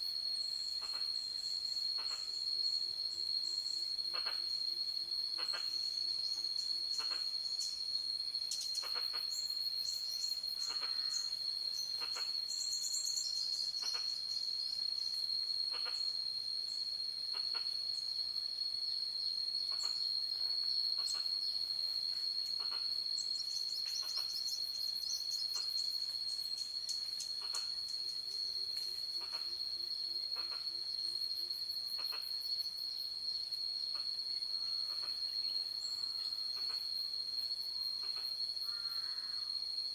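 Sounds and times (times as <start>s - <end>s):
crickets trilling: 0.0s - 39.9s
low pulsing insect call: 0.0s - 39.9s.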